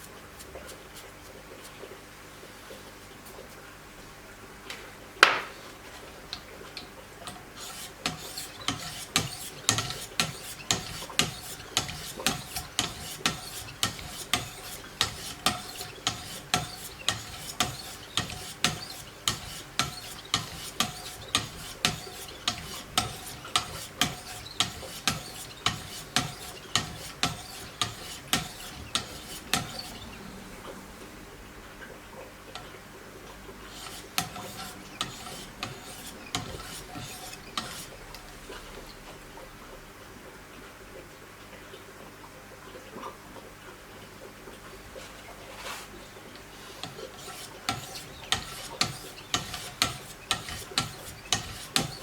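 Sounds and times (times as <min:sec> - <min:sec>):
sharpening stones stroking knife blade: 0:07.6 - 0:30.1, 0:33.7 - 0:37.9, 0:46.8 - 0:52.0.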